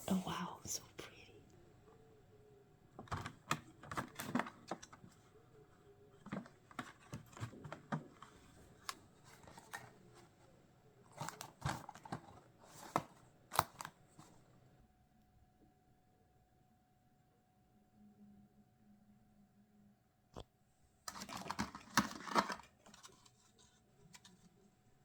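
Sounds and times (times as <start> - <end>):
packaging clicks and rustles: 3.0 - 10.5, 11.1 - 14.6, 21.1 - 24.5.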